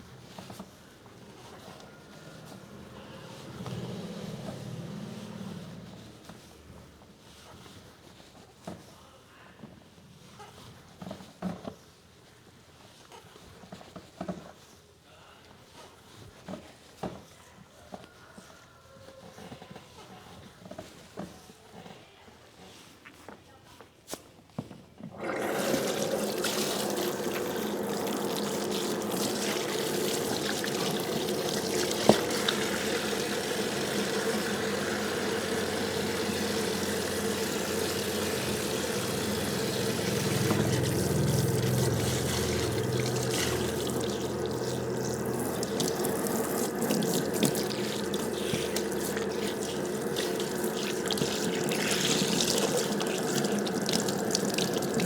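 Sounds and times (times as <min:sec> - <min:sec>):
running water: 0:25.2 - 0:55.0.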